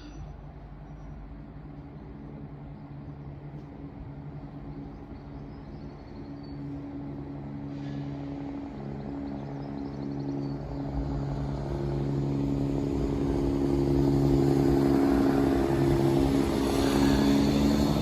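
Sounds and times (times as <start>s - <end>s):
diesel train engines droning: 0.0s - 18.0s.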